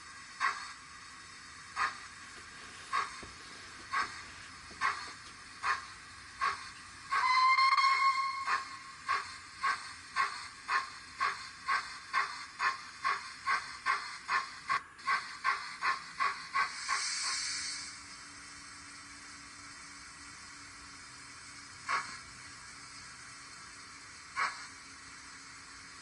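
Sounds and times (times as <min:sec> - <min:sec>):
steam hiss: 0:00.0 - 0:26.0
steam locomotive chuffing: 0:00.0 - 0:26.0
train whistle blast: 0:07.2 - 0:08.9.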